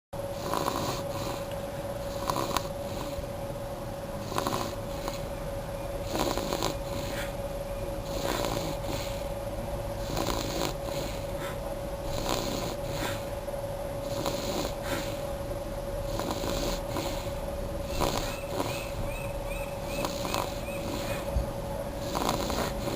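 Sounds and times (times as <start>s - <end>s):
steady hum: 0.2s - 22.9s
baby snoring: 0.3s - 3.3s, 4.2s - 5.3s, 6.0s - 7.4s, 8.0s - 9.3s, 10.0s - 13.3s, 14.0s - 15.2s, 16.1s - 19.0s, 19.8s - 21.3s, 22.0s - 22.9s.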